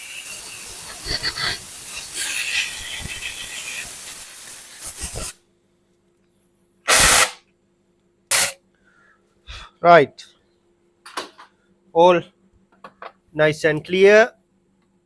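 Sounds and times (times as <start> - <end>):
compressed air blow gun hissing: 0.0 - 5.4, 6.9 - 7.4, 8.3 - 8.6.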